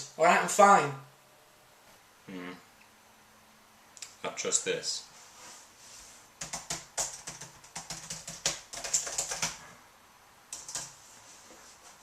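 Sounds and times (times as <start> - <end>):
typing on computer keyboard: 6.4 - 9.6, 10.5 - 11.0.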